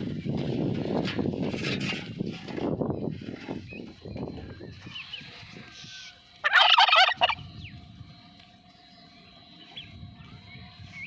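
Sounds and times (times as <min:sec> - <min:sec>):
turkey gobbling: 0:06.0 - 0:07.4.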